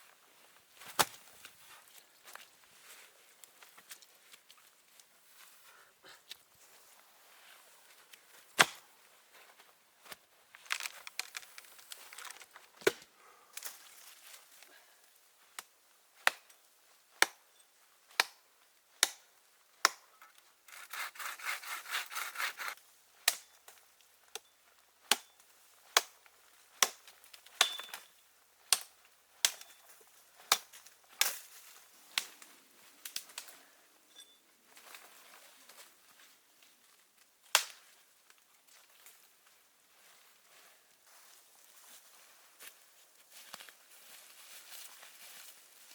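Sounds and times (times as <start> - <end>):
hand-sawing wood: 20.7 - 22.8.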